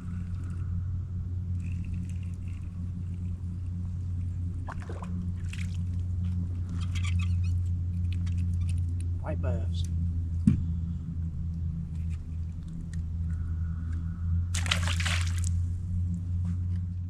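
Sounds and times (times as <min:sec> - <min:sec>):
boat motor humming: 0:00.0 - 0:17.0
light clicks and rattles: 0:01.4 - 0:17.0
short falling squeak: 0:06.7 - 0:07.8.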